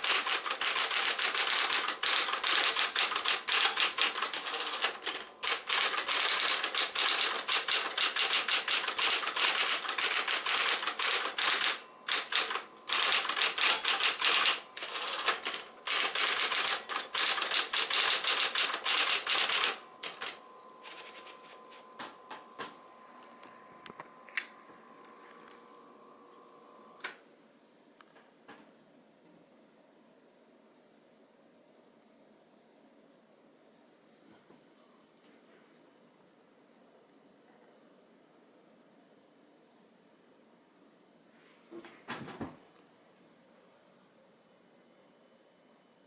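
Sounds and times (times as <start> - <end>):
typewriter key strikes: 0.0 - 21.3
scattered clicks: 0.0 - 21.4
faint steady hum: 0.0 - 42.0, 42.6 - 46.0.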